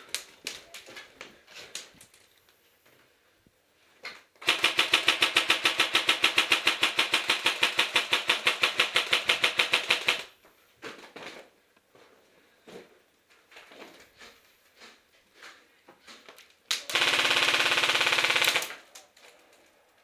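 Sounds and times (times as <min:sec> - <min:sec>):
airsoft gun full-auto burst: 0:04.4 - 0:10.3, 0:16.9 - 0:18.8.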